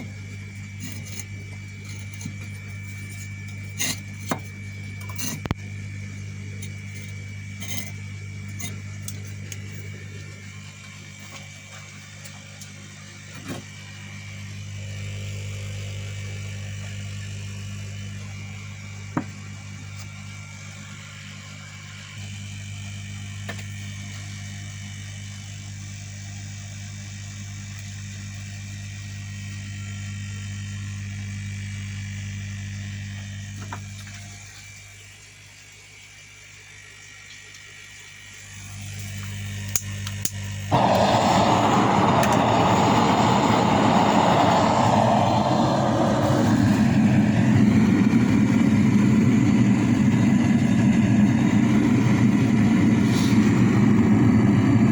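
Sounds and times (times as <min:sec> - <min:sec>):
air rushing: 0:40.7 - 0:48.0
electric air blower humming: 0:40.7 - 0:54.8.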